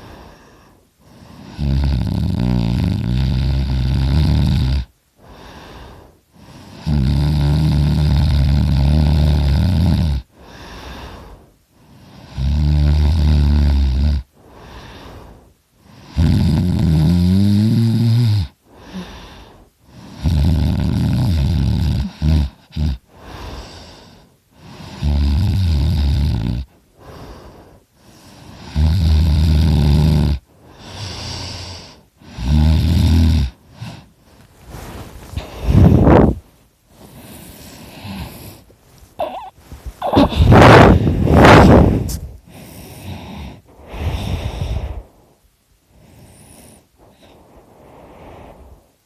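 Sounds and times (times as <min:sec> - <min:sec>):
soft breathing: 0:00.0 - 0:01.6, 0:05.1 - 0:06.9, 0:10.2 - 0:12.4, 0:14.2 - 0:16.1, 0:18.5 - 0:20.2, 0:22.6 - 0:25.0, 0:26.6 - 0:28.8, 0:30.4 - 0:32.6, 0:33.4 - 0:49.0
man snoring loudly: 0:01.4 - 0:04.9, 0:06.7 - 0:10.3, 0:12.0 - 0:14.3, 0:16.0 - 0:19.1, 0:19.9 - 0:23.0, 0:24.6 - 0:26.7, 0:28.4 - 0:34.1.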